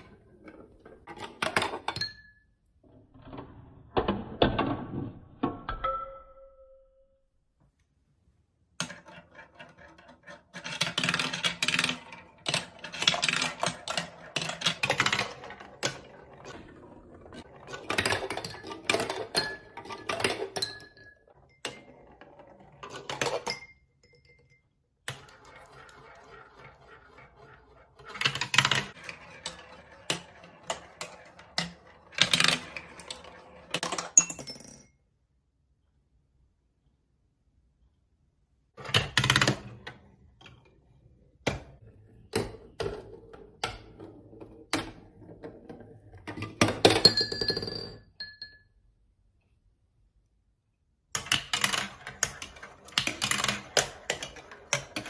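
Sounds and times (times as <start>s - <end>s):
marbles clattering on plastic track: 8.8s - 23.8s, 25.1s - 34.9s, 42.3s - 48.1s, 51.2s - 55.0s.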